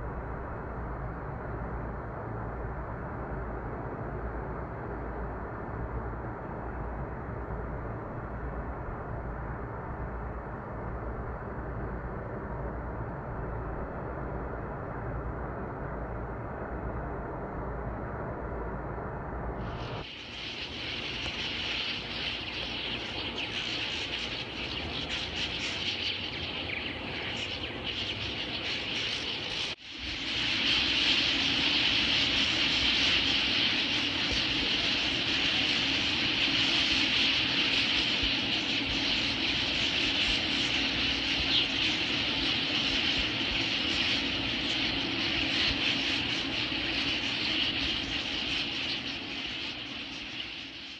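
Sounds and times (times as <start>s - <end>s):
chorus of birds chirping: 19.7s - 50.9s.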